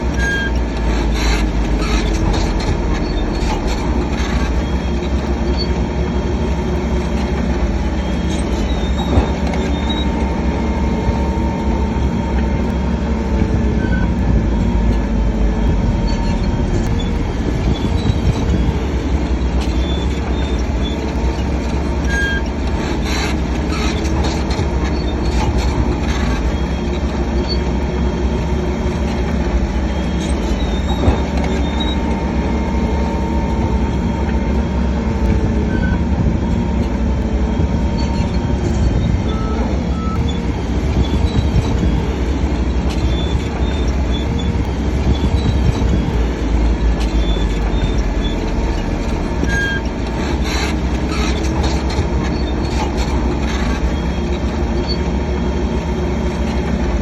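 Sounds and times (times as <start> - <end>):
bulldozer diesel engine under load: 0.0 - 57.0
steel tracks squealing: 0.0 - 57.0.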